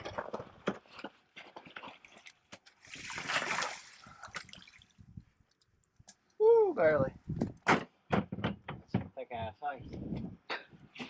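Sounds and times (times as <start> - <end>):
water splashing and sloshing: 0.1 - 6.0.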